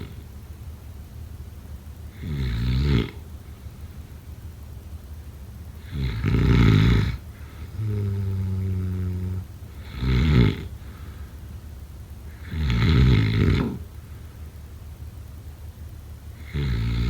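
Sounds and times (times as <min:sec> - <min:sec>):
rattling snores: 0:00.0 - 0:00.2, 0:02.1 - 0:03.3, 0:05.8 - 0:11.3, 0:12.3 - 0:14.0, 0:16.3 - 0:17.0.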